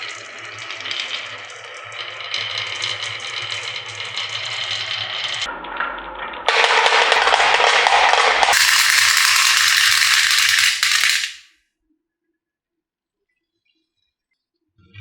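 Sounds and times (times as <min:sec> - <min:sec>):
marbles rattling down wooden run: 0:06.5 - 0:11.4.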